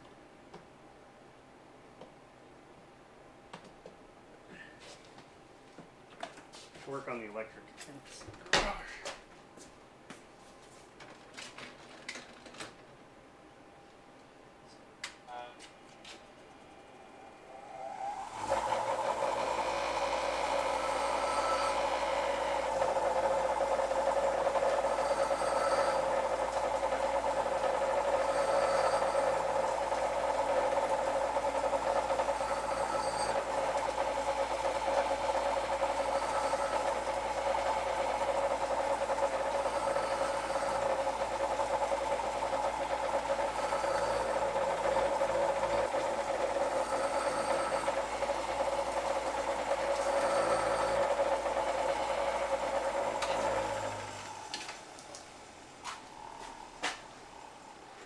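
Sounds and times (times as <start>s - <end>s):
electric power tool motor running: 17.5s - 55.1s.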